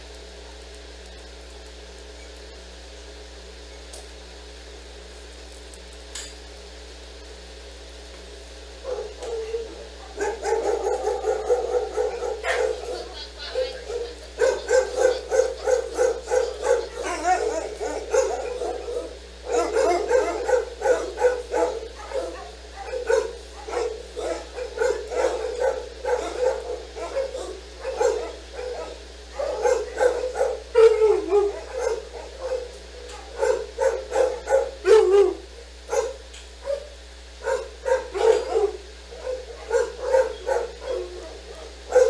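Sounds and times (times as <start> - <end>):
dog barking: 8.8 - 42.0
dog whining: 8.9 - 36.1, 36.7 - 42.0.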